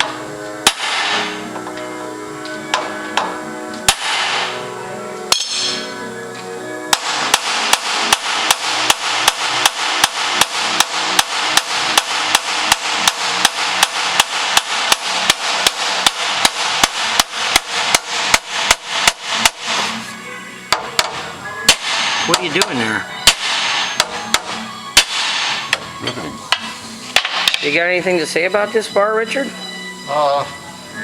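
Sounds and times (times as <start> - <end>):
hammer striking steel: 0.0 - 1.8, 2.7 - 4.6, 5.3 - 6.0, 6.9 - 20.0, 20.7 - 27.9.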